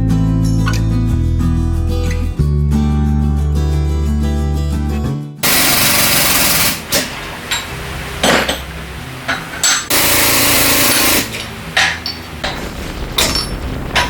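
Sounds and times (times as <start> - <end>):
power tool running: 5.4 - 7.5, 9.9 - 11.7.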